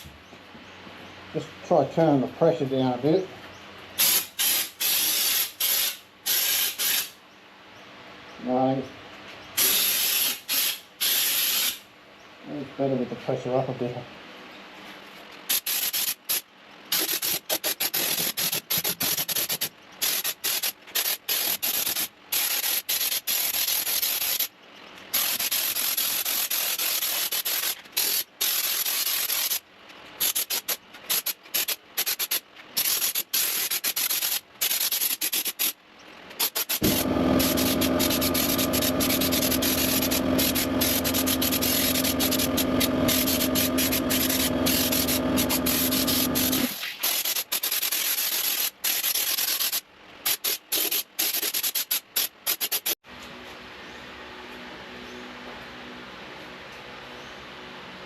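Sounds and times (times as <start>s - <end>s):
spray gun hissing: 36.4s - 47.2s
machine hum: 36.8s - 46.8s.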